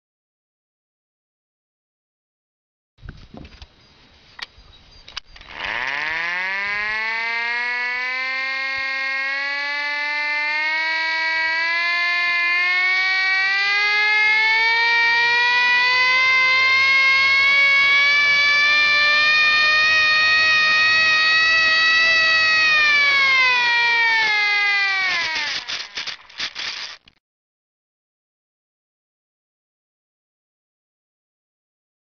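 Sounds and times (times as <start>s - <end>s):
air raid siren wailing: 5.7s - 25.7s.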